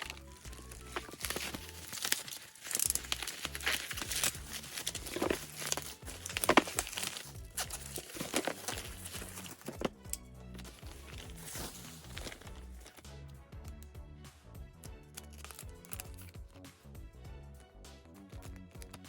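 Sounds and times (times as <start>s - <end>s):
packaging crinkling: 0.0s - 13.0s, 15.2s - 16.4s
background music with bass: 0.0s - 19.0s.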